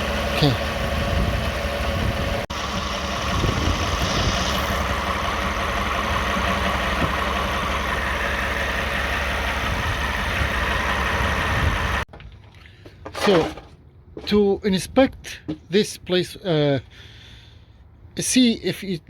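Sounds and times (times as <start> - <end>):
engine idling with buzzing rattle: 0.0 - 13.8.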